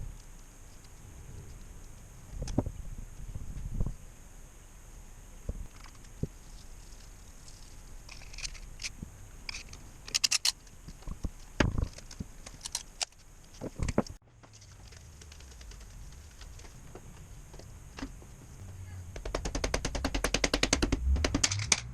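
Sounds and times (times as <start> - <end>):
hand tools clicking and clinking: 8.1 - 10.7.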